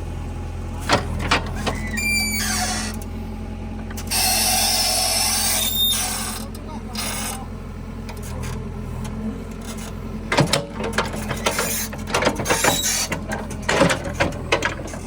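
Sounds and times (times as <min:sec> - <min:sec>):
backhoe diesel engine running: 0:00.0 - 0:15.0
machine clanks and rattles: 0:09.5 - 0:15.0.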